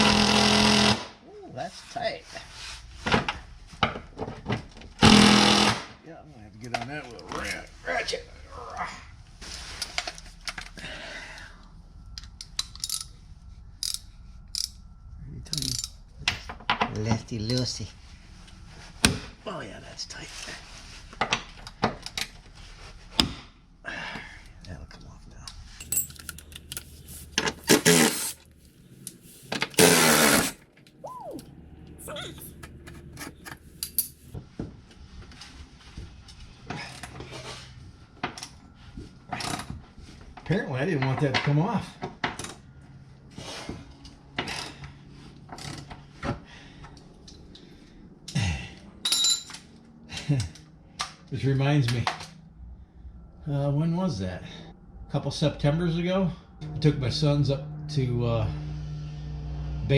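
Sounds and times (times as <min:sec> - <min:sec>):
metal hand tools clinking: 0:25.8 - 0:26.9
scraping or rubbing: 0:25.9 - 0:30.6.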